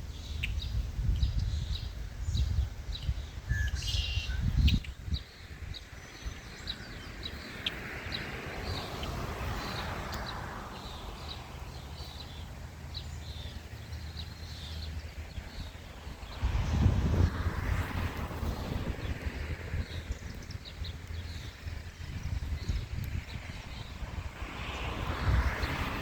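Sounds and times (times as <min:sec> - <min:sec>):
small birds chirping: 0:00.0 - 0:26.0
broad noisy swell: 0:05.4 - 0:26.0.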